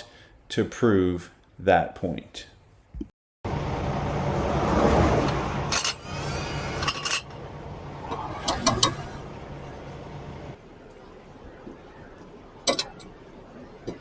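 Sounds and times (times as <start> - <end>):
steady mechanical hum: 3.5 - 14.0
metal tools clinking: 5.3 - 7.4.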